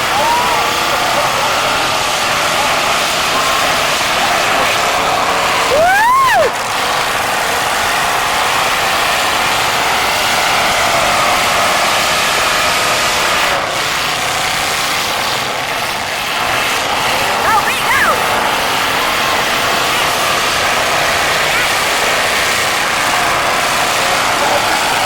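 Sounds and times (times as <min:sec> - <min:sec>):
car engines running: 0:00.0 - 0:25.0
loud engine rev: 0:00.0 - 0:25.0.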